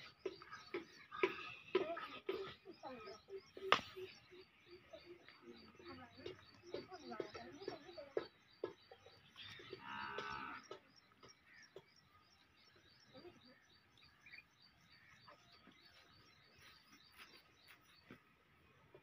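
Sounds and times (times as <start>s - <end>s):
soft farmyard sounds: 0.0s - 19.0s
farm animal calling: 8.9s - 12.2s.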